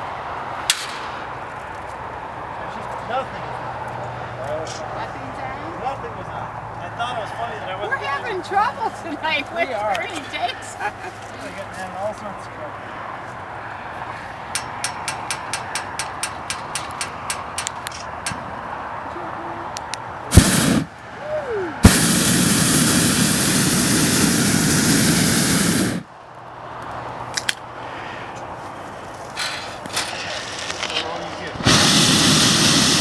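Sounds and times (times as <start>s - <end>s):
propane burner roaring: 14.5s - 18.6s, 20.2s - 26.1s, 29.4s - 33.0s
sharp clicks: 14.6s - 18.5s.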